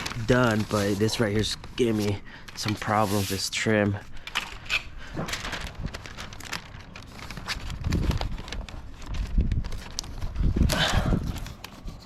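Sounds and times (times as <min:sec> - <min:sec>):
masking paper and tape crackling: 0:00.0 - 0:12.0
wind rumbling on microphone: 0:07.3 - 0:11.6.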